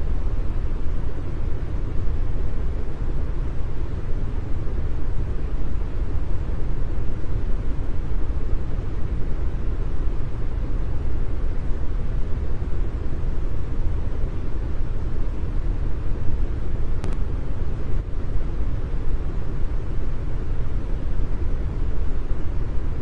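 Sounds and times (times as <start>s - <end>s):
deep brown noise hiss: 0.0s - 23.0s
faint click: 17.0s - 17.2s.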